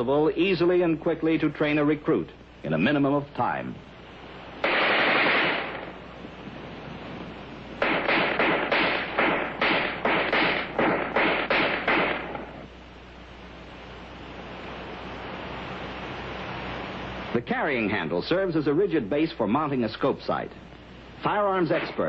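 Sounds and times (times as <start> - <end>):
film soundtrack hiss: 0.0 - 22.0
rifle gunfire with echo: 4.6 - 5.9, 7.8 - 12.6.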